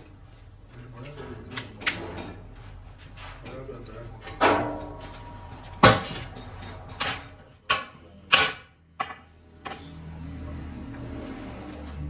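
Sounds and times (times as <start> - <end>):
low steady hum: 0.0 - 8.3.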